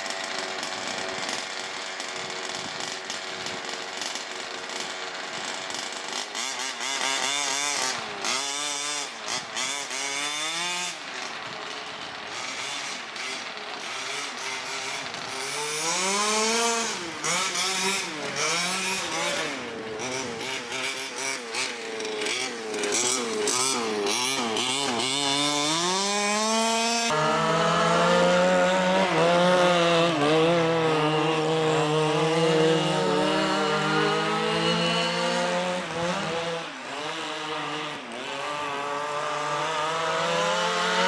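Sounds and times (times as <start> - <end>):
small two-stroke engines revving: 0.0 - 41.0.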